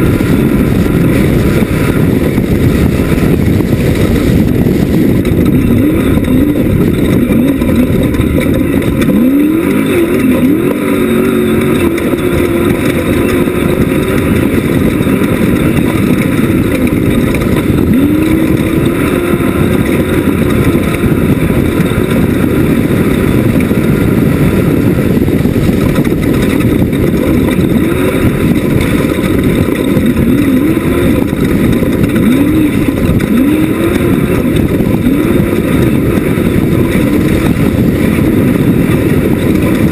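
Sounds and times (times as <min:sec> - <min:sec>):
race buggy engine revving: 0:00.0 - 0:39.9.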